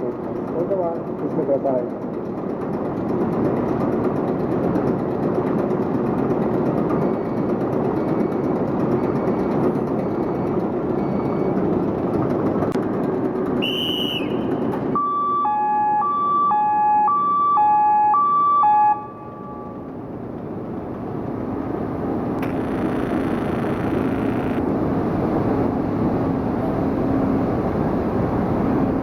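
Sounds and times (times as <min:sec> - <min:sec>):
two-tone hi-lo alarm: 0:15.0 - 0:19.8, 0:22.5 - 0:24.6
diesel engine running: 0:19.8 - 0:29.0.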